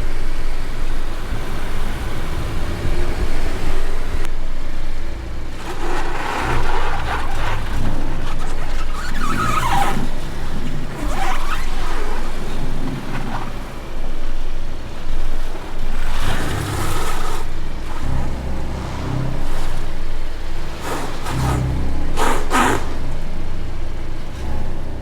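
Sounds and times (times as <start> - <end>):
engine hum: 0.0 - 25.0
road and tyre rumble: 0.0 - 25.0
hissy swells: 15.7 - 25.0.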